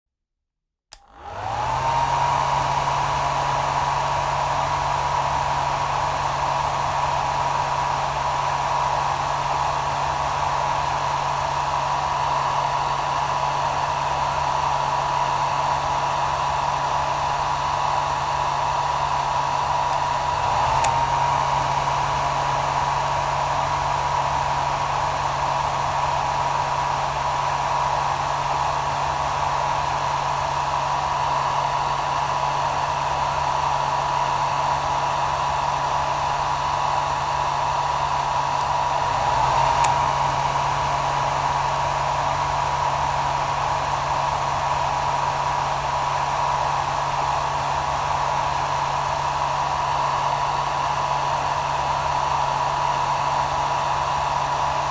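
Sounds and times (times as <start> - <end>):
hair dryer switch click: 0.9 - 2.1, 19.6 - 21.8, 37.9 - 40.6
hair dryer running: 0.9 - 54.9.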